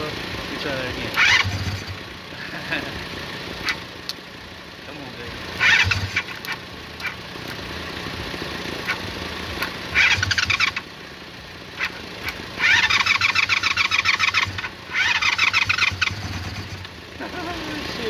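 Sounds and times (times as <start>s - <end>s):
motorcycle starter motor cranking: 1.2s - 2.0s, 5.6s - 7.2s, 9.6s - 10.8s, 11.8s - 17.0s
sharp clicks: 5.7s - 7.6s, 11.8s - 17.0s.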